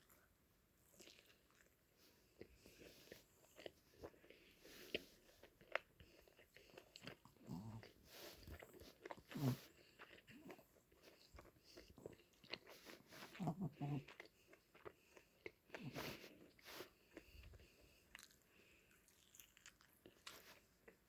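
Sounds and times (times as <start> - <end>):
chewing and biting food: 0.0 - 21.0.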